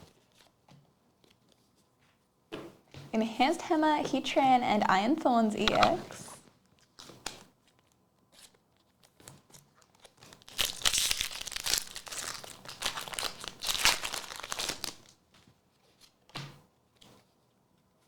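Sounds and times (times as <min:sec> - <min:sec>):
foil wrapper tearing and crinkling: 0:09.0 - 0:15.1.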